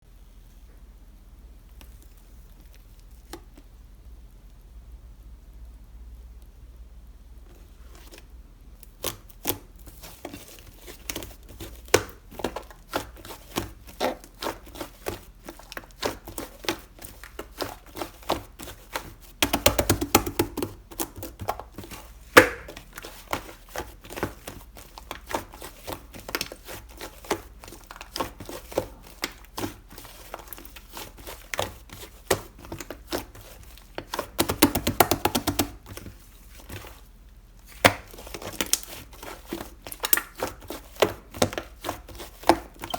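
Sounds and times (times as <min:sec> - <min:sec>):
slime crackling rapidly: 0:11.3 - 0:35.9
slime clicking and popping: 0:39.9 - 0:40.4.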